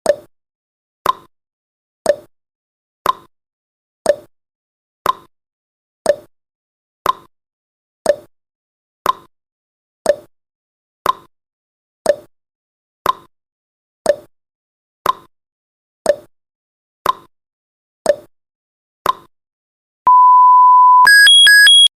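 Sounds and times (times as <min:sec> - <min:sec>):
high-pitched electronic alarm beeping: 0:20.1 - 0:21.9
steady electronic beep: 0:20.1 - 0:21.9
timer ticking: 0:21.0 - 0:21.9.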